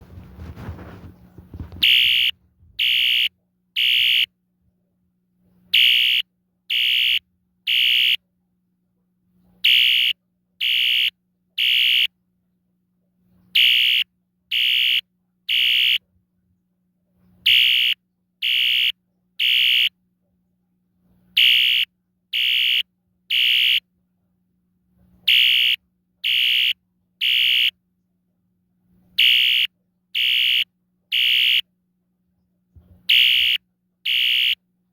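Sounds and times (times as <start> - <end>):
faint steady hum: 0.0 - 34.9
fire alarm horn beeping: 1.8 - 4.3, 5.8 - 8.2, 9.7 - 12.1, 13.6 - 16.0, 17.5 - 19.9, 21.4 - 23.8, 25.3 - 27.7, 29.2 - 31.6, 33.1 - 34.6.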